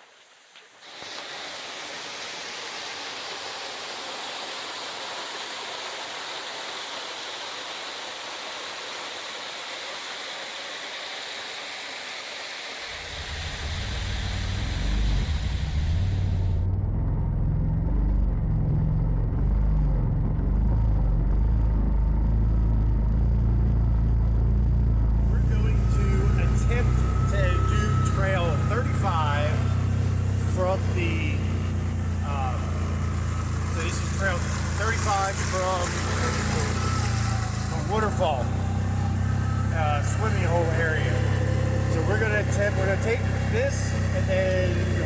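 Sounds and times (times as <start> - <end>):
rush of falling water: 0.0 - 16.6, 26.6 - 45.0
vehicle engine rumble: 12.9 - 45.0.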